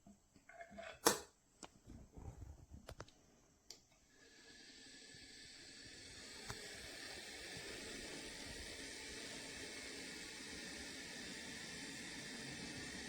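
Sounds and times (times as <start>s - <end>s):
espresso machine hissing and whining: 4.1s - 13.0s.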